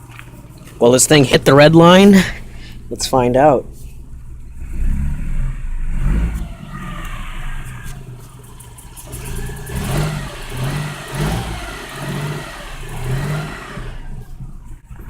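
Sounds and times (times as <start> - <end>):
car engine revving: 0.0 - 15.0
engine knocking: 6.4 - 15.0.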